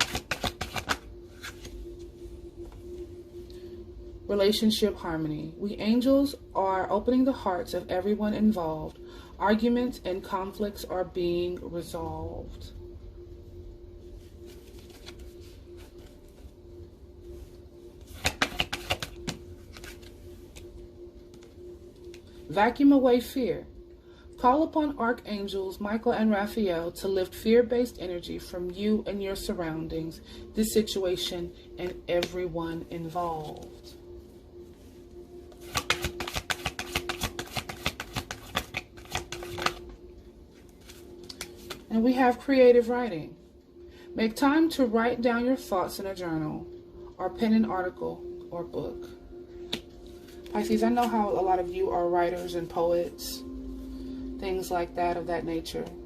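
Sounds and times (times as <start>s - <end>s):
cards clicking and snapping: 0.0s - 1.1s, 18.2s - 19.9s, 35.6s - 39.8s, 41.2s - 41.8s
faint steady hum: 0.0s - 56.0s.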